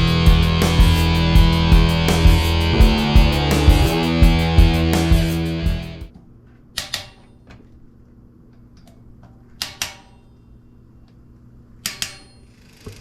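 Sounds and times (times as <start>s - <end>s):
sharp clicks of bike parts: 6.8s - 7.6s, 8.8s - 10.2s, 11.8s - 13.0s.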